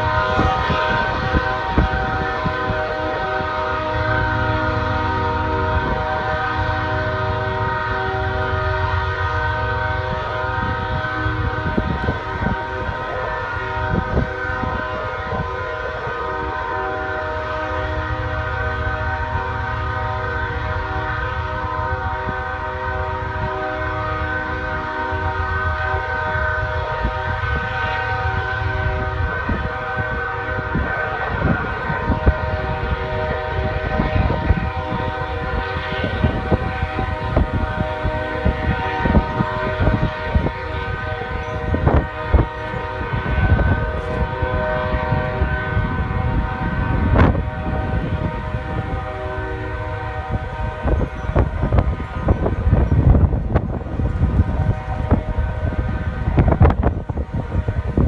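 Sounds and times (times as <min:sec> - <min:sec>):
locomotive air horn blasting: 0:00.0 - 0:58.0.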